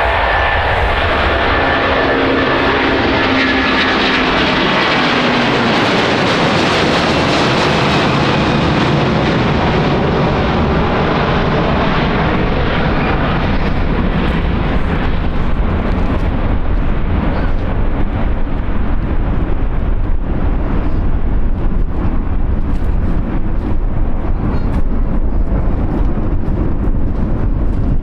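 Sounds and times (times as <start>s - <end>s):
jet engines passing: 0.0s - 28.0s.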